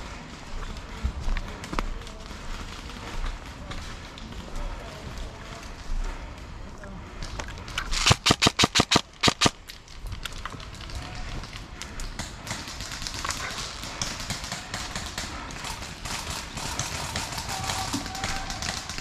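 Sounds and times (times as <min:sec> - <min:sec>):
airsoft gun rapid shots: 0:07.8 - 0:09.6, 0:12.4 - 0:19.0.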